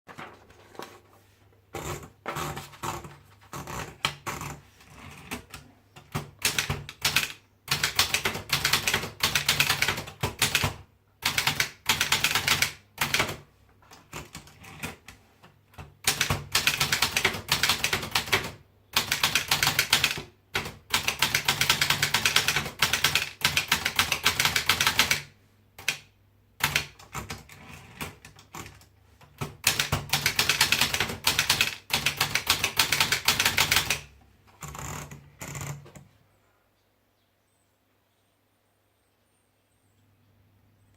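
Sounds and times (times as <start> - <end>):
typewriter keystrokes: 1.8 - 13.4, 15.8 - 35.9.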